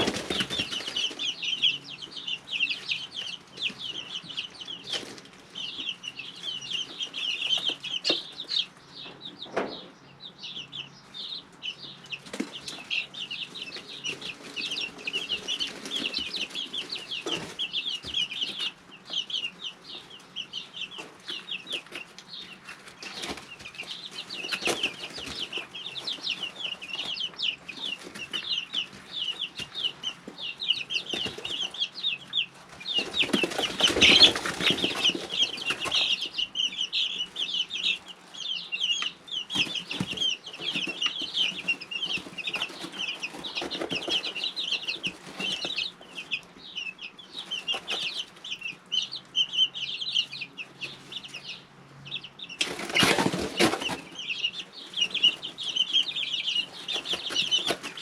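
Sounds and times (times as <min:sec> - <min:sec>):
wing-flapping and scuffling: 0:00.0 - 0:01.3, 0:32.6 - 0:37.0, 0:52.6 - 0:54.2
chicks peeping: 0:00.0 - 0:58.0.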